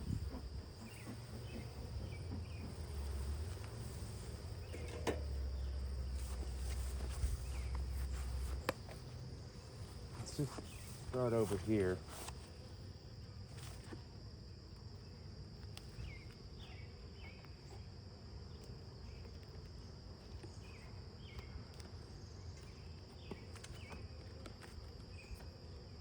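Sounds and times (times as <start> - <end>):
honeybees buzzing: 0.0 - 13.0
high-pitched insect trill: 0.0 - 13.8.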